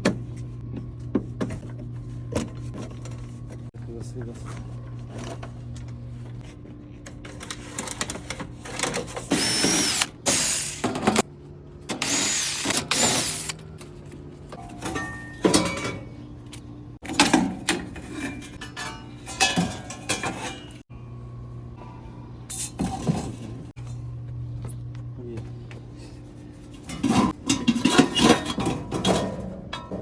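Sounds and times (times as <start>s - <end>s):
cordless drill driving screws: 9.3s - 10.8s, 12.0s - 13.5s.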